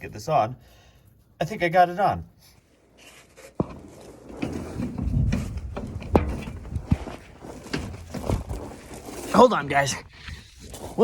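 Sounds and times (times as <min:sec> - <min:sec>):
shuffling and rustling: 0:02.4 - 0:11.0.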